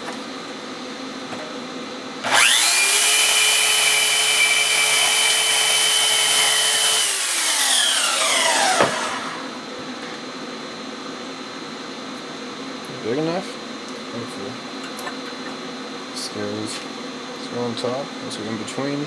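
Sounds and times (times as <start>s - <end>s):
power saw cutting aluminium: 2.2s - 9.6s.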